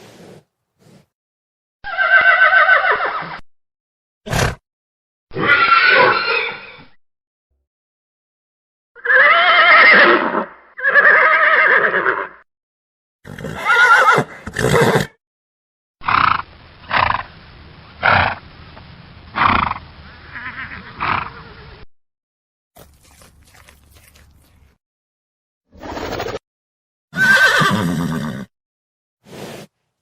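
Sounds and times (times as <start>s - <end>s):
horse blowing sharp breaths: 0.0s - 1.1s, 29.2s - 29.8s
horse neighing: 9.0s - 12.4s, 13.2s - 15.2s, 27.1s - 28.5s.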